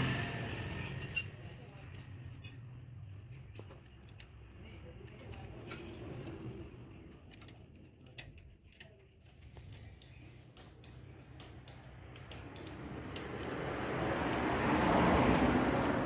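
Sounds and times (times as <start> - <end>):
metallic clicks of tools: 3.4 - 6.4, 7.0 - 13.6.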